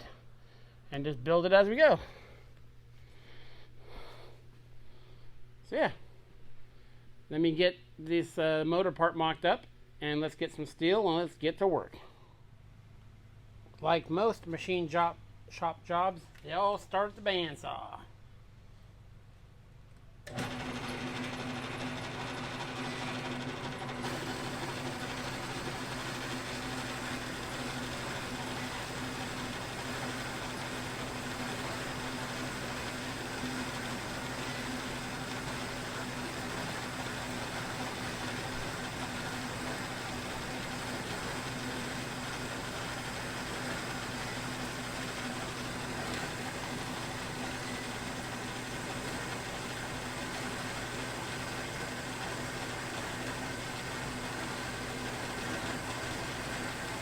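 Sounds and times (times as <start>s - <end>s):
bandsaw cutting steel: 20.3s - 57.0s.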